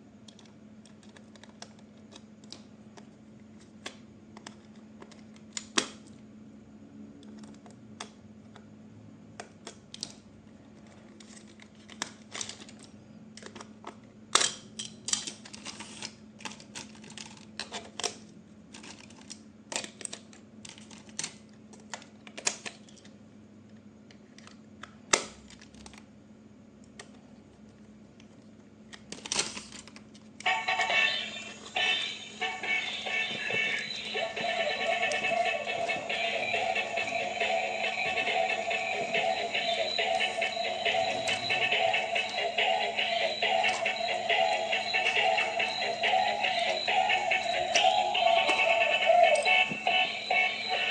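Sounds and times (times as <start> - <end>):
faint steady hum: 0.0 - 50.9
plastic toys clicking and tapping: 10.8 - 23.1.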